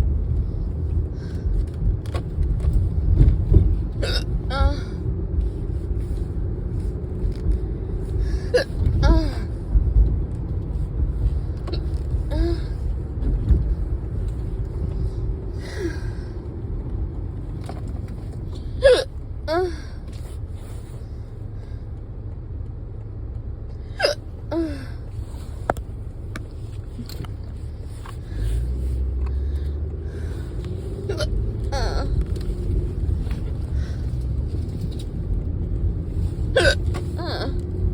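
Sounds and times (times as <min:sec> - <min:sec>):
car road rumble: 0:00.0 - 0:37.9
hiccups: 0:04.0 - 0:04.7, 0:18.8 - 0:19.1, 0:23.9 - 0:24.8, 0:31.1 - 0:32.1, 0:36.6 - 0:37.6.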